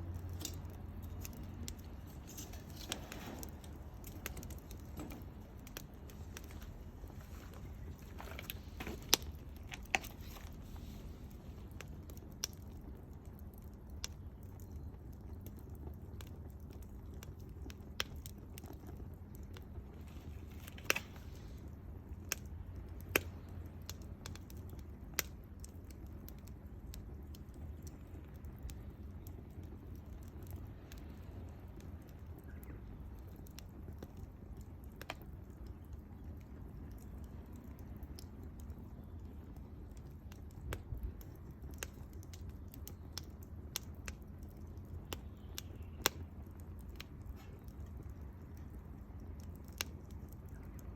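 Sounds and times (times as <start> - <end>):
steady low rumble: 0.0 - 14.1
wood fire crackling and popping: 0.0 - 50.9.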